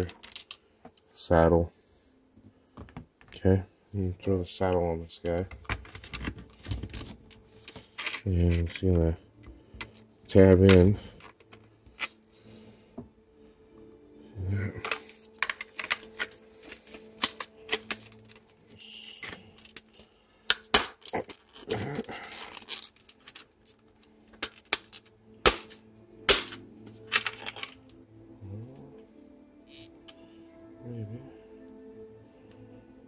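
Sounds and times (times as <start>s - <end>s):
plastic toy parts clicking: 14.8s - 18.5s, 26.3s - 27.9s.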